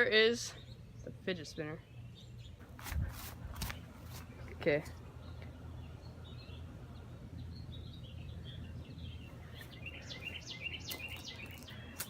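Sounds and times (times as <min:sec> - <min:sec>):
faint birds chirping: 0:00.0 - 0:12.0.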